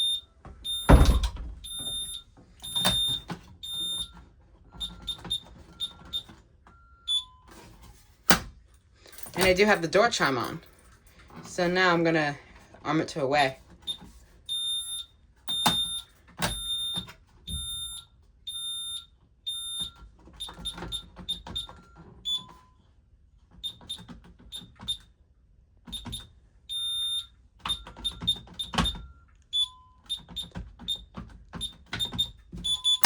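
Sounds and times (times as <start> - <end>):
alarm keypad beeping: 0.0 - 4.2, 4.8 - 7.4, 13.9 - 22.6, 25.9 - 31.0, 31.6 - 33.0.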